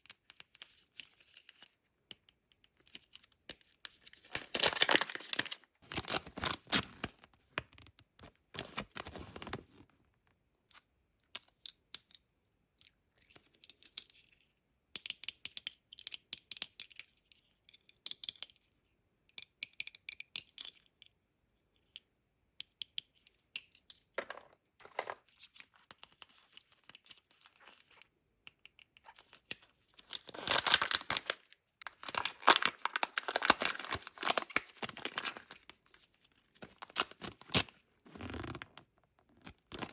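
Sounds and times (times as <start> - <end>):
wrappers tearing and crinkling: 4.3 - 7.2, 30.0 - 35.7.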